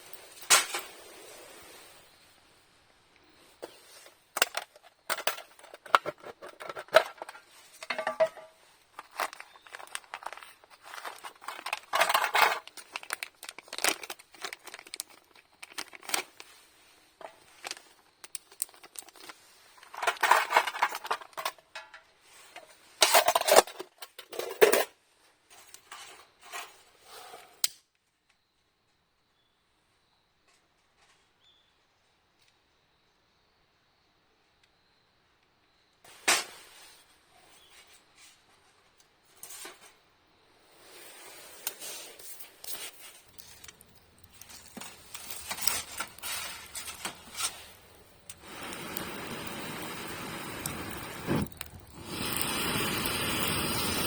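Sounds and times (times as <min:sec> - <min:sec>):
crinkling and rustling handling: 0:03.6 - 0:24.8, 0:41.3 - 0:52.0.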